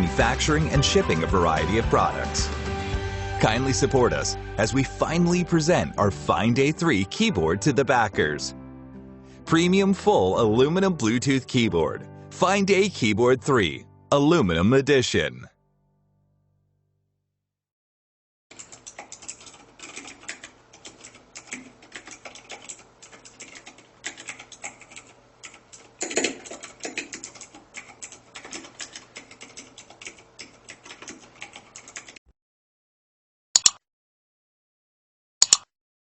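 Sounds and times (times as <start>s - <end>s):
mechanical keyboard typing: 18.5s - 32.2s.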